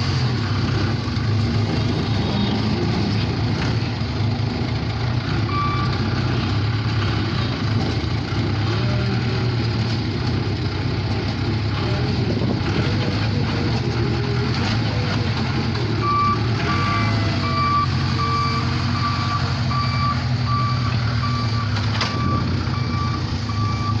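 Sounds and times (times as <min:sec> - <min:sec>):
diesel engine running: 0:00.0 - 0:24.0
reverse alarm beeping: 0:16.0 - 0:24.0.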